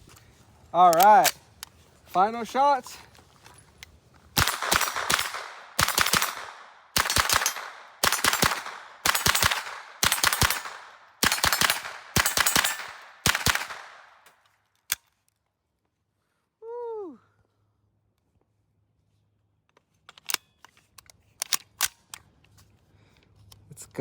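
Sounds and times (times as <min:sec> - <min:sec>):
rapid pistol gunshots: 0:04.4 - 0:14.2.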